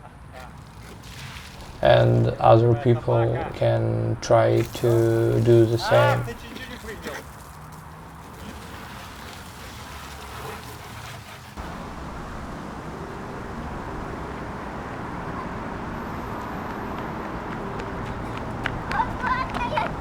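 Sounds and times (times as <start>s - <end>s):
outdoor background low rumble: 0.0s - 6.4s, 11.6s - 20.0s.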